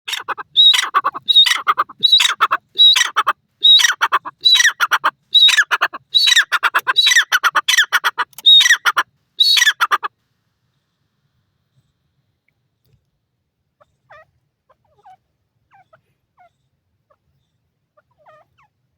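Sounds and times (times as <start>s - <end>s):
francolin calling: 0.1s - 10.1s.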